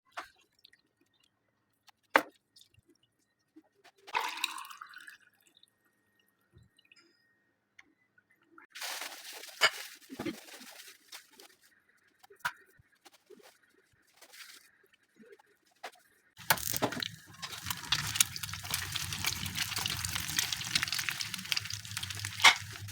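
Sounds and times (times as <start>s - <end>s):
running water splashing: 16.4s - 22.9s
water pouring: 16.4s - 22.9s.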